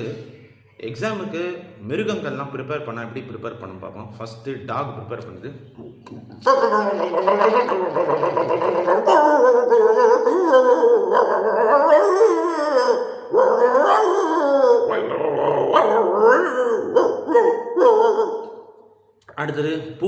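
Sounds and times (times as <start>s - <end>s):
man imitating dog whining and howling: 6.4s - 18.5s.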